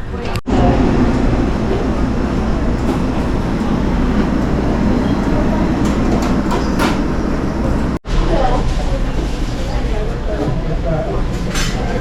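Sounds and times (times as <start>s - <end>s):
road and engine noise in vehicle: 0.5s - 8.0s.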